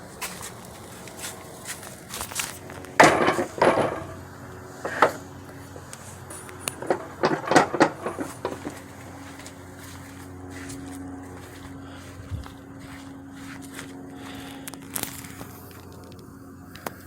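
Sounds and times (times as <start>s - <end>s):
hard objects knocking and clattering: 3.0s - 4.2s, 6.8s - 8.8s.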